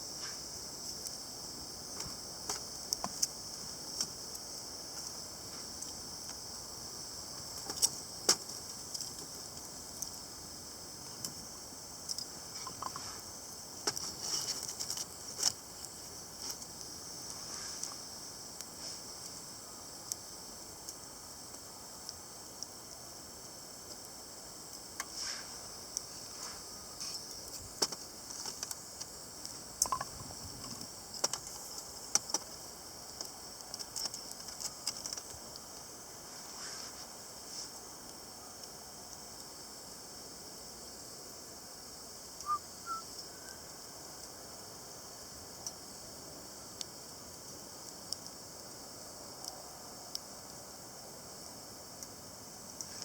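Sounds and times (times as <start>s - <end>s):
steady high hiss: 0.0s - 53.0s
wood fire crackling and popping: 0.2s - 36.3s, 45.2s - 49.4s.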